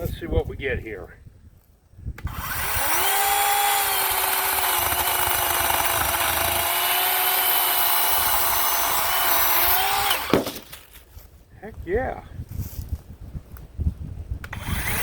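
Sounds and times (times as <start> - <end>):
electric chainsaw motor whine: 2.2 - 10.4, 14.5 - 15.0
chain rasping through wood: 2.4 - 11.0.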